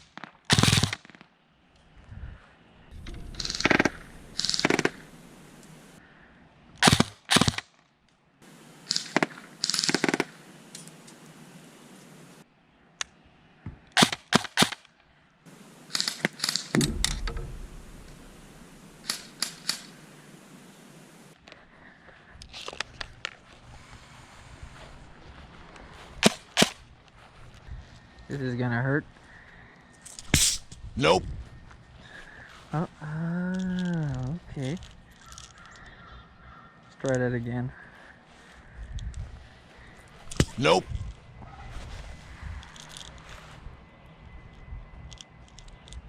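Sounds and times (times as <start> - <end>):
electric airsoft gun firing: 0.5 - 1.0, 3.2 - 5.2, 6.8 - 7.6, 8.8 - 10.4, 15.6 - 20.0.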